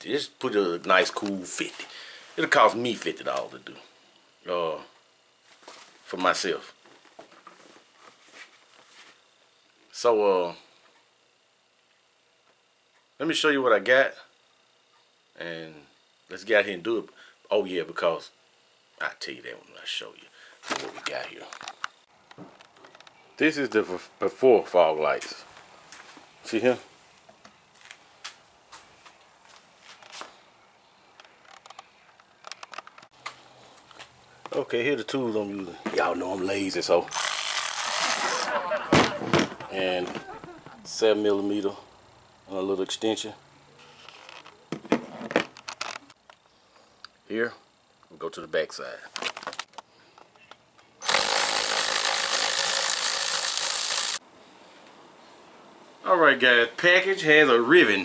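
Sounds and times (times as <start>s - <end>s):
power driver spinning: 35.6s - 42.4s, 51.0s - 54.2s.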